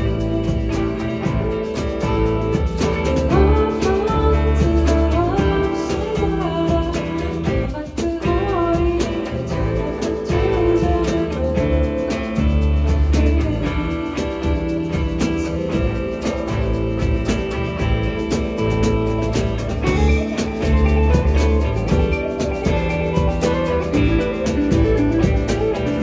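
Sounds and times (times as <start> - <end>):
acoustic guitar and bass: 0.0 - 26.0
person singing: 3.0 - 16.4.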